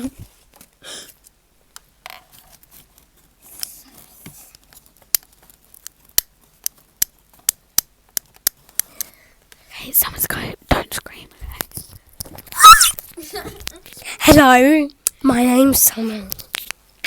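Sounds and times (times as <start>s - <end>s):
soft rustles: 2.2s - 5.7s.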